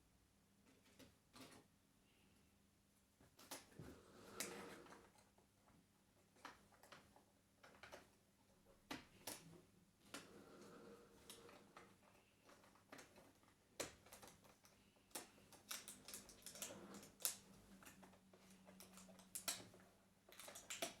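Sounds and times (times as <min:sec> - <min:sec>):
clicks of small hard objects: 0:12.5 - 0:21.0.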